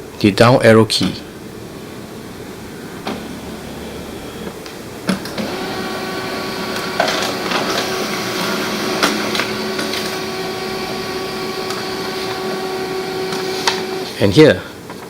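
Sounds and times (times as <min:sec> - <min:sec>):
laser printer hum: 0:01.0 - 0:14.2
printer clicks: 0:03.0 - 0:03.4, 0:04.4 - 0:14.2.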